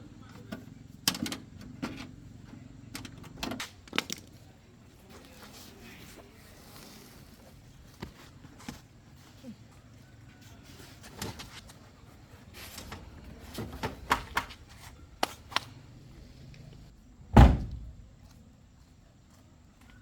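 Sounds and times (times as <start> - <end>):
car door slamming: 17.3 - 18.1.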